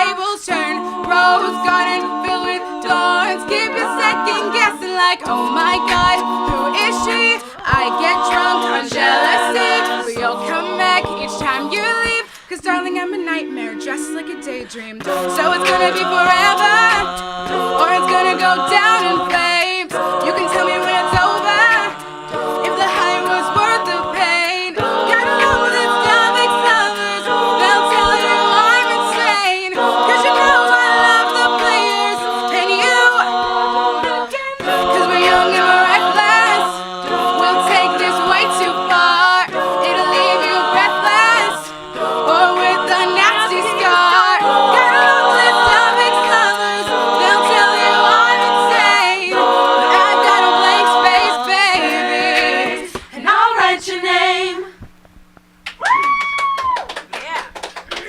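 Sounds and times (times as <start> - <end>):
a cappella group singing: 0.0 - 54.9.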